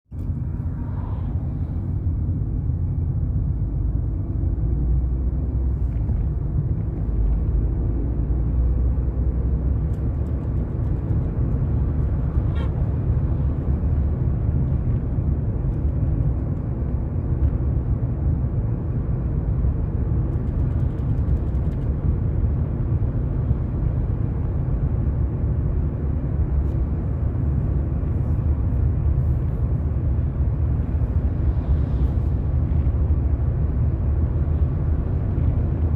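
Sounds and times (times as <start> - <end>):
car engine and road rumble: 0.1 - 35.9.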